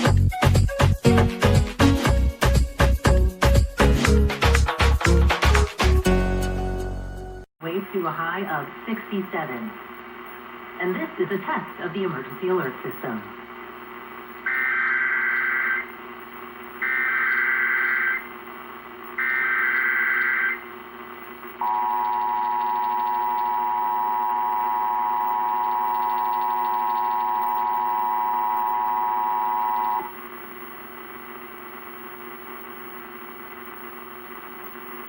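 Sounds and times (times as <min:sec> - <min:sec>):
screechy data tones: 0:14.4 - 0:16.0, 0:16.8 - 0:18.3, 0:19.2 - 0:20.7, 0:21.6 - 0:30.1
low steady hum: 0:20.6 - 0:35.0
two-tone attention signal: 0:21.6 - 0:30.1.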